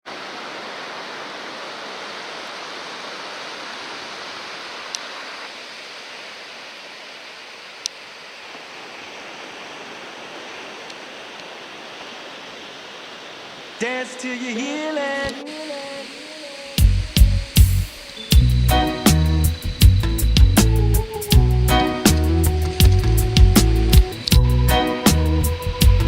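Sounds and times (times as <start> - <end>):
ocean surf breaking on beach: 0.0 - 19.7.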